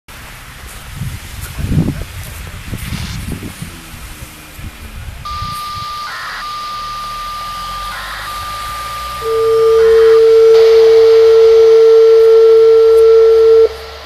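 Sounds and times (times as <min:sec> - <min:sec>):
crackling bursts: 0:02.6 - 0:14.0
warning siren steady tone: 0:05.2 - 0:14.0
high beep tone: 0:05.3 - 0:13.9.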